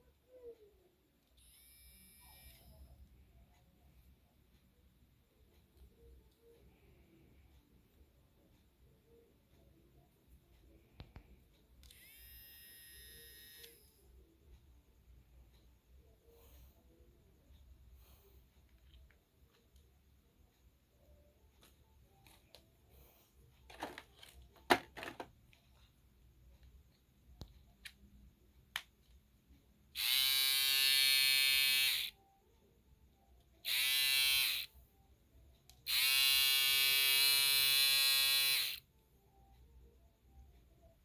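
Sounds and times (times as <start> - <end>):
electric shaver buzzing: 1.4 - 2.7, 11.9 - 13.9, 30.0 - 32.2, 33.6 - 34.7, 35.9 - 38.8.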